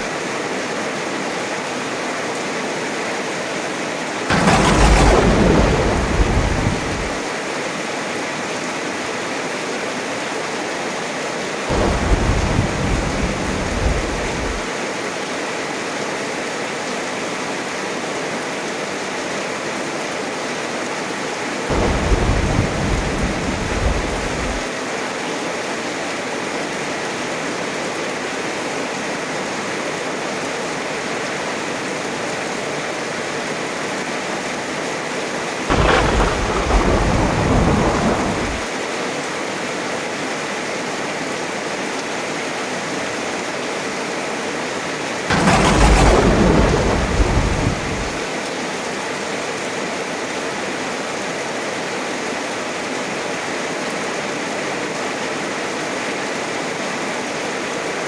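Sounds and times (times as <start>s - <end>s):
heavy rain: 0.0s - 15.2s, 18.4s - 54.0s
thunder rumbling: 4.3s - 7.3s, 11.7s - 14.7s, 21.7s - 24.7s, 35.7s - 38.7s, 45.3s - 48.3s.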